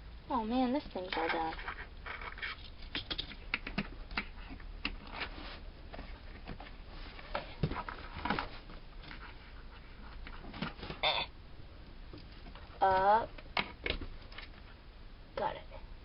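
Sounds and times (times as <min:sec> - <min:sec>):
small plastic toy clicks and knocks: 0:01.0 - 0:05.0.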